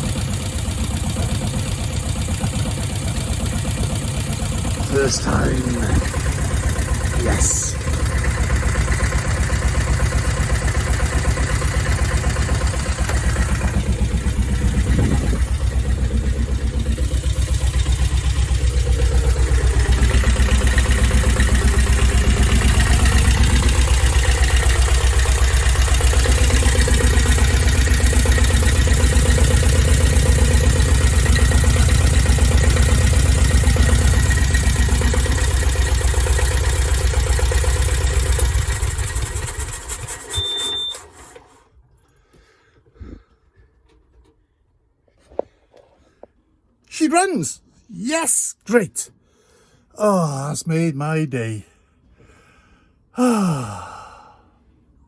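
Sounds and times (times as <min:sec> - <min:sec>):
diesel engine running: 0:00.0 - 0:41.4.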